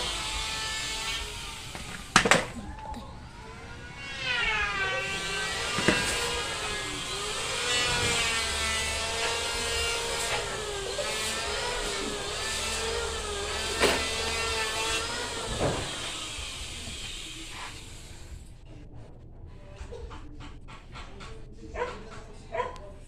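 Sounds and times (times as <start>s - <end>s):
small motor tool whining: 0.0s - 18.5s
sharp knocks: 5.2s - 6.6s.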